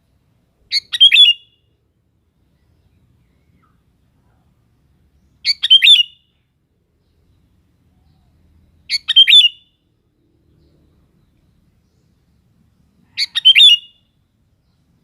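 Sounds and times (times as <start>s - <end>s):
bird singing quick notes: 0.7s - 1.6s, 5.4s - 6.2s, 8.9s - 9.6s.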